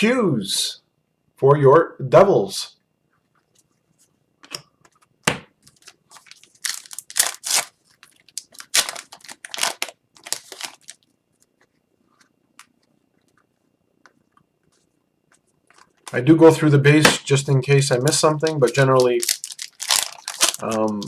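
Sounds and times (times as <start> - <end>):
foil wrapper tearing and crinkling: 5.7 - 11.1, 18.0 - 21.0.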